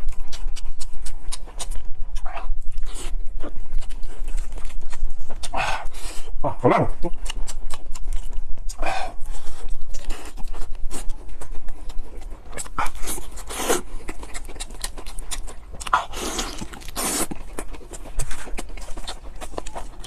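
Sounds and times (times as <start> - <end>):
wet chewing and lip-smacking: 0.0 - 20.0.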